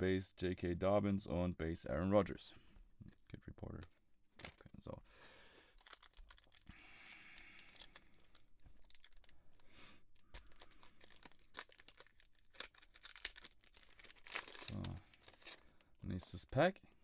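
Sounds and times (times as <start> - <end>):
cards and foil wrapper rustling: 4.4 - 16.7.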